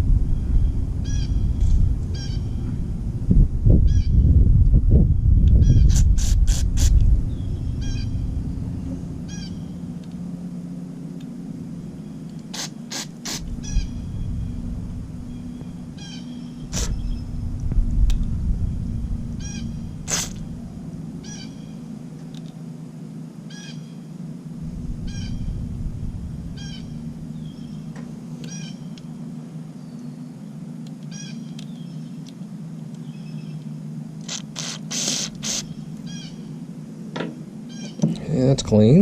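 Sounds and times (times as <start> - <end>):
steady low hum: 0.0 - 39.0
compressed air bursts: 5.9 - 7.1, 12.5 - 13.7, 16.6 - 17.2, 19.6 - 20.6, 34.2 - 35.7
short chirping call: 15.2 - 17.3.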